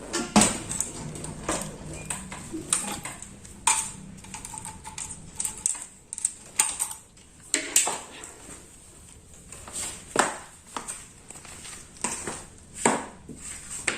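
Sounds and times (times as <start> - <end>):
metallic clicks and clinks: 0.6 - 7.2.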